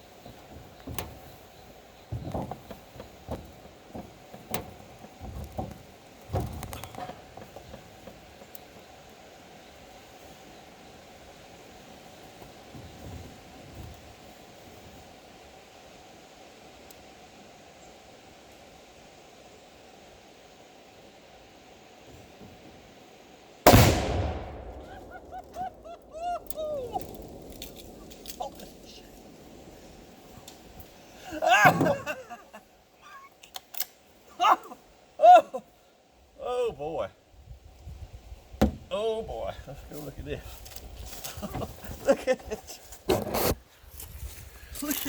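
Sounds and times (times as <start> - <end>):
large explosion: 23.7 - 29.8
yelping calls: 24.8 - 27.1
knocks and thumps: 38.6 - 38.9.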